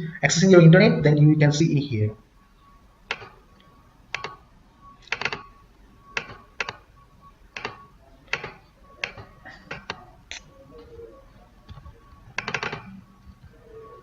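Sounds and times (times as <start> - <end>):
computer mouse clicks: 3.1 - 3.4, 4.1 - 4.4, 6.2 - 6.8, 7.6 - 10.5.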